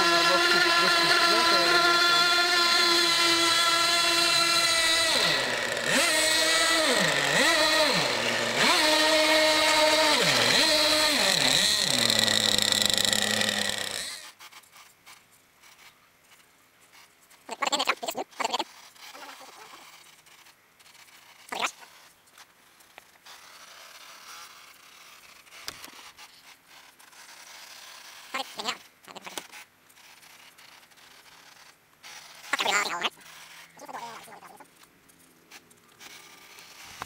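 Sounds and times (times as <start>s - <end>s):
rc boat motor whining: 0.0s - 14.5s, 17.5s - 22.1s, 23.2s - 34.7s, 35.8s - 37.0s.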